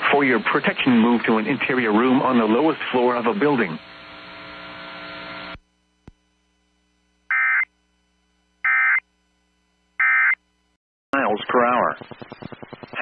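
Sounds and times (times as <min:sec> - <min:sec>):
radio hiss: 0:00.0 - 0:05.6, 0:11.2 - 0:13.0.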